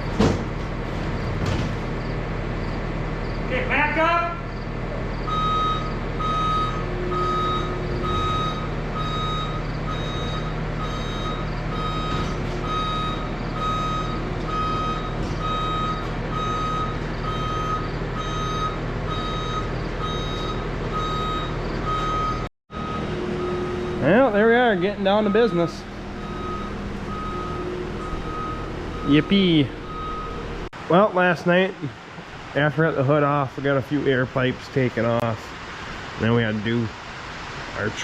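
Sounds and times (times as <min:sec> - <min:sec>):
backup alarm beeping: 0:05.2 - 0:30.7
machine engine running: 0:22.7 - 0:30.7.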